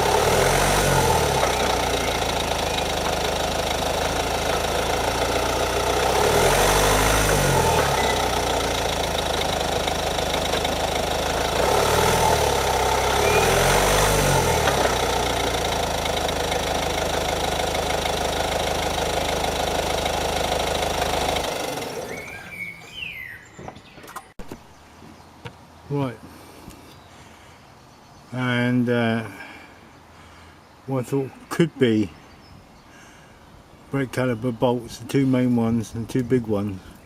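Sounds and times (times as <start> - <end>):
car engine idling: 0.0 - 22.8.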